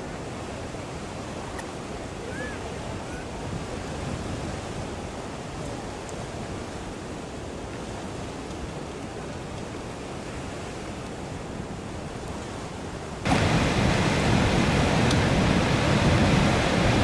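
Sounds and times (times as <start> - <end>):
steady rushing outdoor noise: 13.2 - 17.0.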